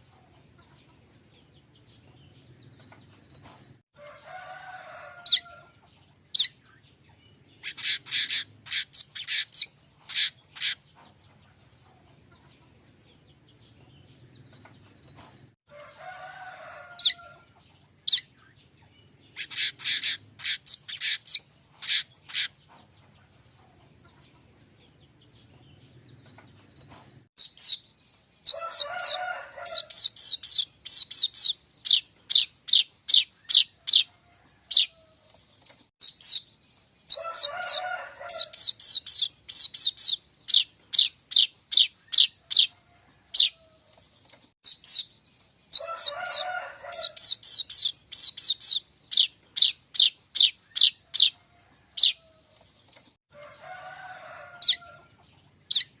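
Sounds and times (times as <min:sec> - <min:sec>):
bird rapid high chirping: 0:06.3 - 0:06.7, 0:07.5 - 0:10.9, 0:18.0 - 0:18.5, 0:19.2 - 0:22.6, 0:27.4 - 0:34.1, 0:36.0 - 0:43.6, 0:44.6 - 0:52.2, 0:55.6 - 0:56.0.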